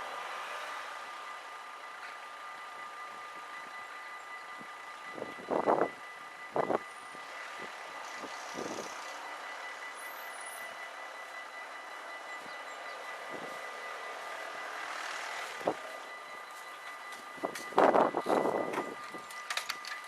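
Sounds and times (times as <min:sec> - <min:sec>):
train wheels rolling on rails: 0:02.0 - 0:20.0
wheels knocking over rail joints: 0:17.5 - 0:20.0.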